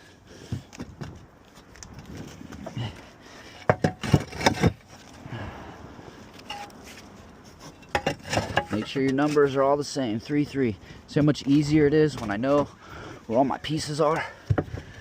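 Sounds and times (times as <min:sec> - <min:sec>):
roof tiles knocking and scraping: 0:00.4 - 0:05.2, 0:06.4 - 0:09.6, 0:14.1 - 0:15.0.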